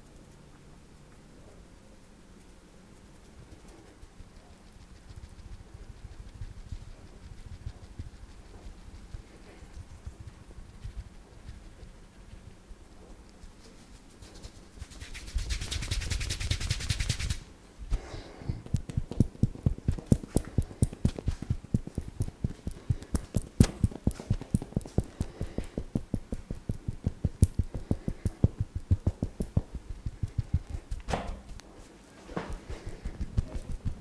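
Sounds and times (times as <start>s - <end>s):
hands slapping and patting body: 14.0s - 34.0s.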